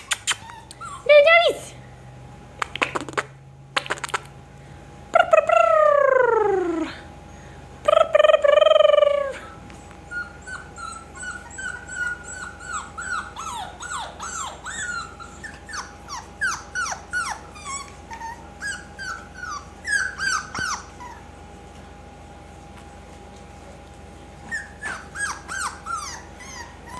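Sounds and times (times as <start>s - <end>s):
puppies whimpering and squealing: 0.0s - 1.7s, 8.4s - 21.7s, 24.4s - 26.9s.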